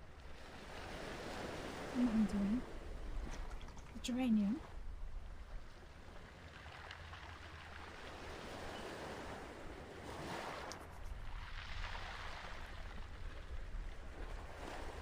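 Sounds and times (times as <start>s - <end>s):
ocean waves washing in: 0.1s - 3.2s, 6.2s - 15.0s.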